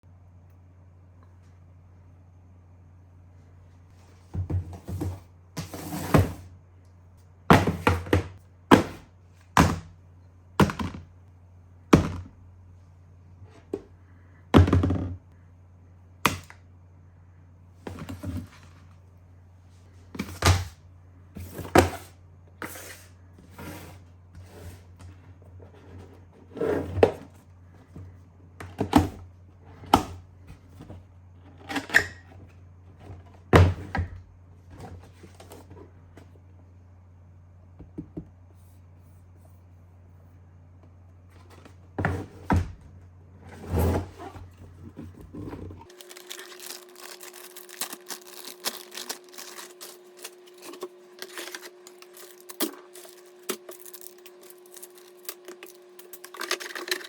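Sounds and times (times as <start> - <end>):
objects thunking on hard surface: 14.5 - 15.2.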